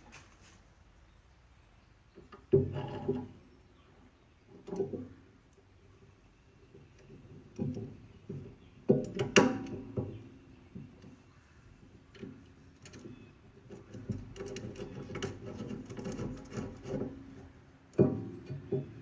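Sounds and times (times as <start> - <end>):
parts and tools rattling: 12.2 - 19.0
metal clanks and knocks: 13.7 - 19.0.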